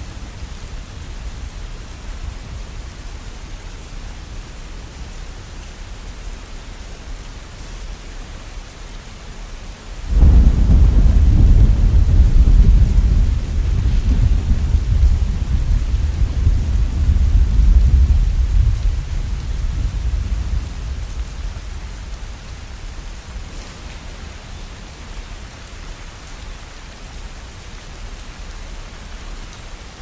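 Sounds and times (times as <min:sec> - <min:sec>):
rain falling: 0:00.0 - 0:30.0
thunder rumbling: 0:10.1 - 0:26.4.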